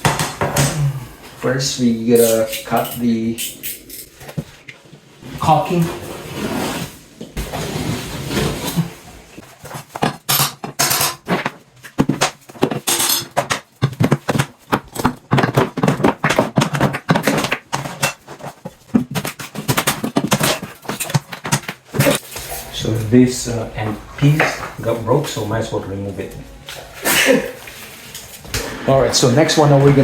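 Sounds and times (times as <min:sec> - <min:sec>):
hand tools clicking and scraping: 0:02.1 - 0:04.7.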